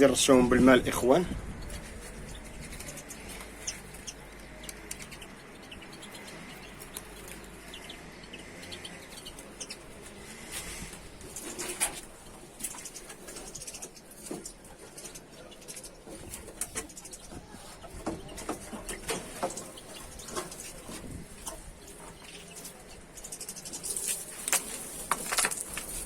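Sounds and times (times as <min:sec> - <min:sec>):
birds calling and cooing: 0:00.0 - 0:26.0
birds fluttering wings: 0:09.3 - 0:26.0.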